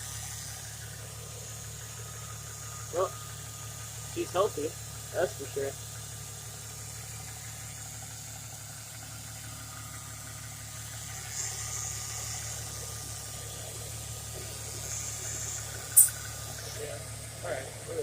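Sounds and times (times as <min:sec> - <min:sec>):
car engine idling: 0:00.0 - 0:18.0
sharp click: 0:16.0 - 0:16.2.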